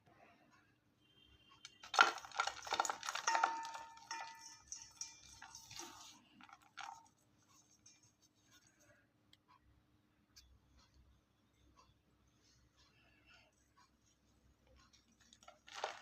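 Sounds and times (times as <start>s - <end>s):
chalk crunching and crackling: 1.8s - 8.9s.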